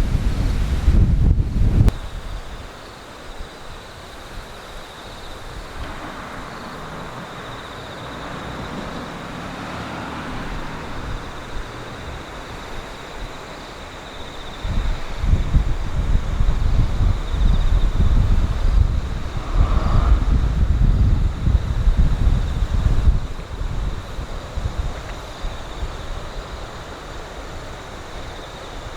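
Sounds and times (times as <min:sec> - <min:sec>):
wind buffeting microphone: 0:00.0 - 0:02.7, 0:03.4 - 0:28.9
vehicle passing: 0:05.6 - 0:13.2, 0:17.9 - 0:24.1.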